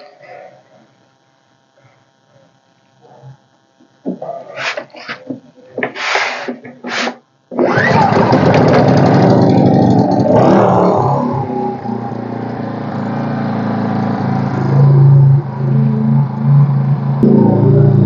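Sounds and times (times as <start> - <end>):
generator engine running: 7.5 - 18.0.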